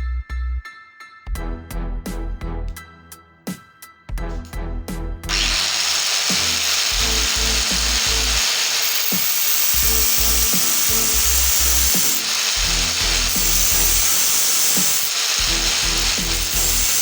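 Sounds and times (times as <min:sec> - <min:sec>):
background music with bass: 0:00.0 - 0:05.6
power tool whirring: 0:05.3 - 0:17.0.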